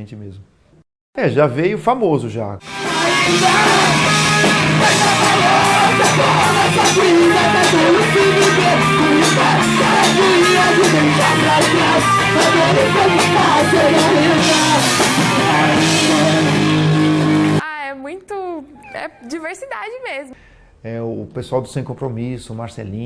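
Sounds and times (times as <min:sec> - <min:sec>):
electric guitar: 0:02.6 - 0:17.6
person singing: 0:02.7 - 0:16.7
steady drum beat: 0:02.7 - 0:17.6.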